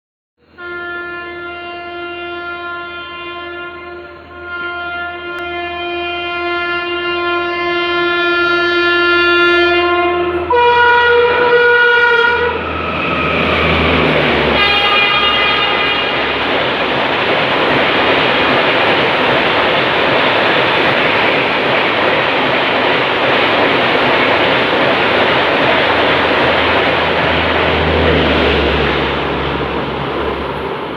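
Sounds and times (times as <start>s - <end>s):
locomotive horn: 0.4s - 16.9s
train coaches rushing past: 0.5s - 30.9s.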